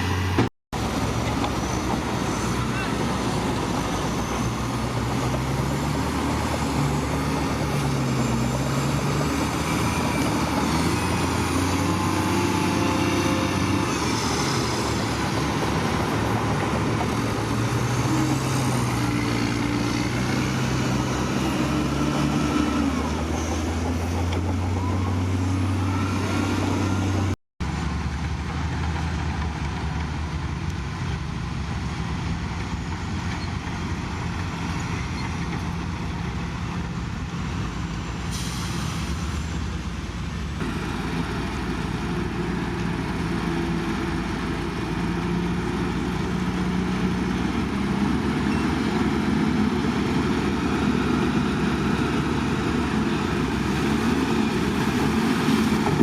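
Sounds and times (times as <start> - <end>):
heavy diesel engine revving: 0.0 - 27.4, 40.6 - 56.0.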